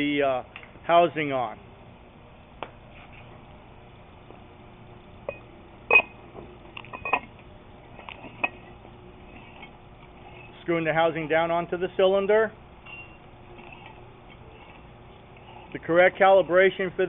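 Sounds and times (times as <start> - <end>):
metal parts clinking: 6.8 - 7.3.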